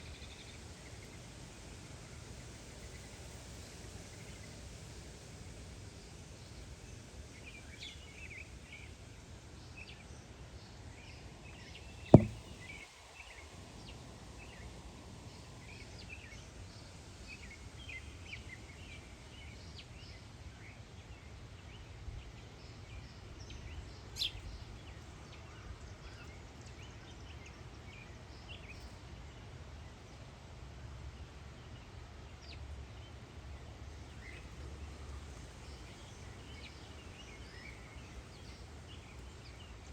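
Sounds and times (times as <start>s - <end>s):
sharp knock: 12.2s - 12.6s.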